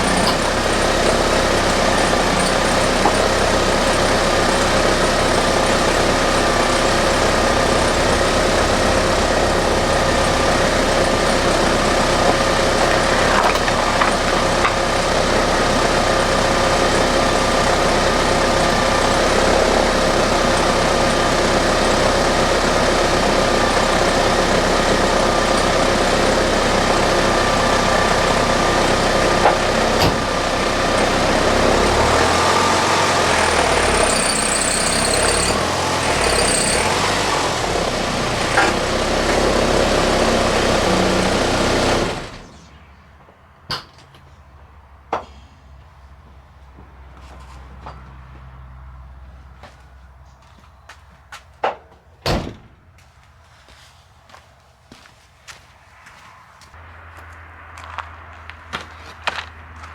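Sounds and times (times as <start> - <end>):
car engine running slowly: 0.0 - 42.7, 53.7 - 59.9
short high squeaks: 33.6 - 37.0.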